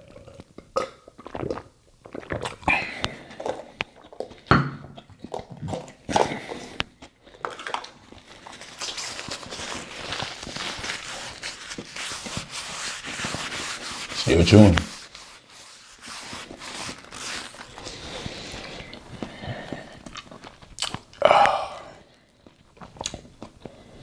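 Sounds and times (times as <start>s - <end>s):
rustling rubbing noise: 8.6s - 19.2s
biting and chewing: 16.0s - 21.2s, 22.4s - 24.0s.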